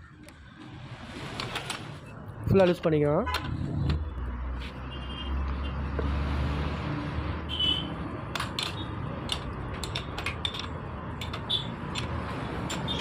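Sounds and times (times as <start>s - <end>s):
metallic tool clicks and clinks: 8.4s - 13.0s.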